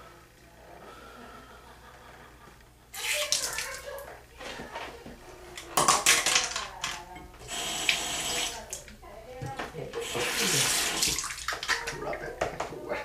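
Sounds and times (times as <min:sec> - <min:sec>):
water jets splashing from ear: 0:07.4 - 0:08.8, 0:10.0 - 0:11.9.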